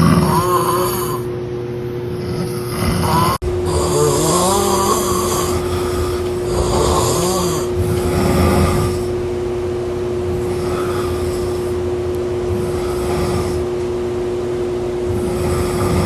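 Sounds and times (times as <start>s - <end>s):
person snoring loudly: 0.0s - 1.3s, 2.1s - 9.2s, 10.3s - 11.8s, 12.5s - 13.7s, 15.1s - 16.0s
steady hum: 0.0s - 16.0s.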